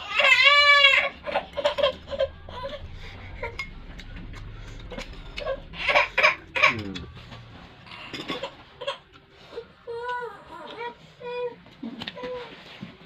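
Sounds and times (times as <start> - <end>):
short falling vocal whine: 0.1 - 8.8.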